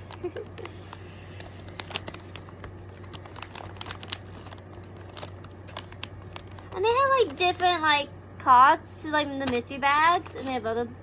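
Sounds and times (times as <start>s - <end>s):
packaging crinkling and rustling: 0.0s - 7.7s.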